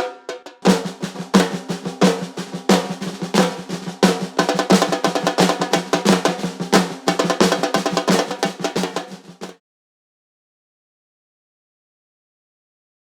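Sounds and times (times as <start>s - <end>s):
strong drum hits: 0.0s - 9.5s
snare drum rolls: 0.0s - 9.6s.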